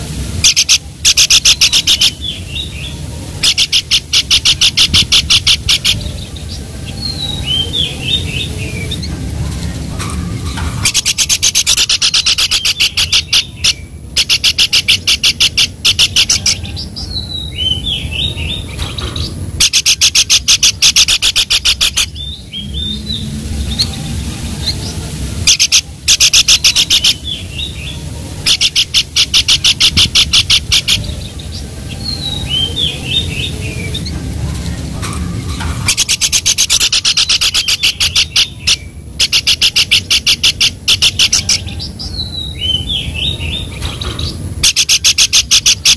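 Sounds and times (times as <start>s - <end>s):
bird chattering rattle: 0.4s - 2.7s, 3.4s - 6.6s, 9.9s - 16.7s, 18.5s - 22.3s, 24.7s - 41.7s, 42.9s - 45.9s.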